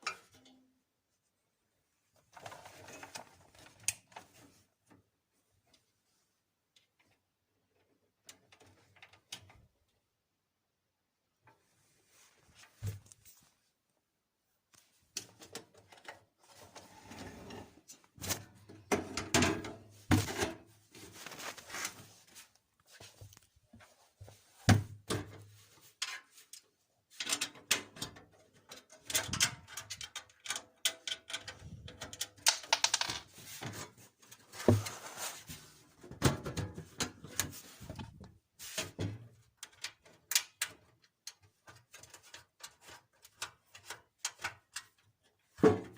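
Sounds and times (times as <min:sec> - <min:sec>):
rustling and scraping: 0:11.5 - 0:13.8, 0:14.7 - 0:24.7, 0:32.9 - 0:39.0.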